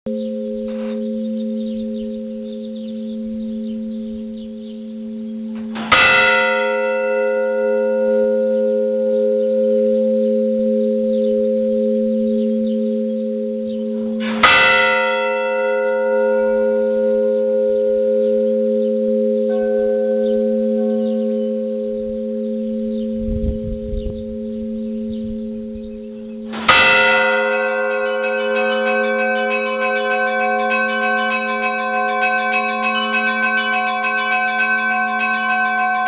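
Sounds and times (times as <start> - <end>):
faint higher-pitched bell: 0.1 - 36.0
bell ringing: 26.4 - 36.0.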